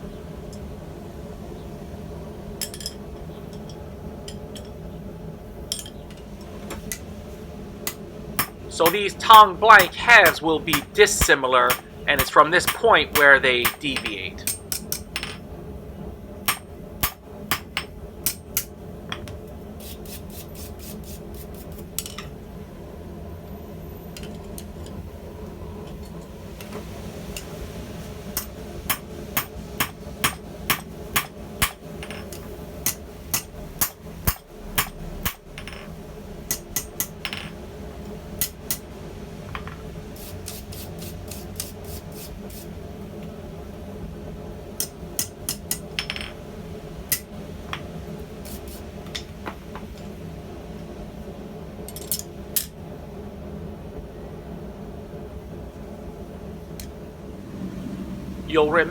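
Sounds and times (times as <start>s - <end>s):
steady low hum: 0.0s - 58.9s
hammer striking steel on anvil: 7.8s - 15.4s, 16.5s - 18.7s, 28.4s - 37.5s, 44.8s - 46.4s.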